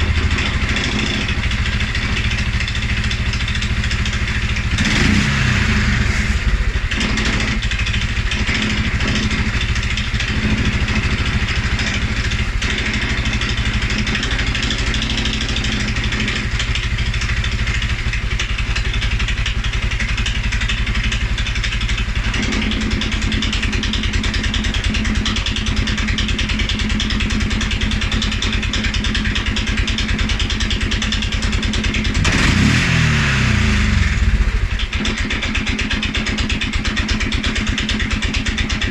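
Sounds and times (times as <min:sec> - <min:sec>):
atv engine idling and revving: 0:00.0 - 0:38.9.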